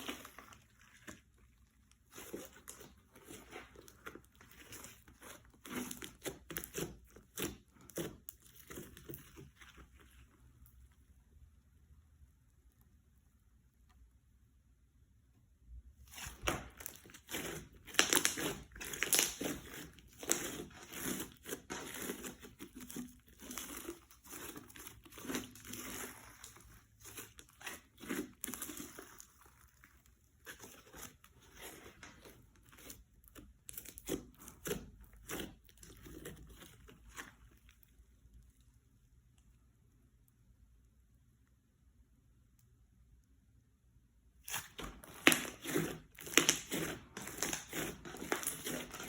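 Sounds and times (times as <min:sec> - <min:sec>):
slime crackling and popping: 0:00.0 - 0:09.6, 0:16.1 - 0:38.4, 0:44.5 - 0:49.0.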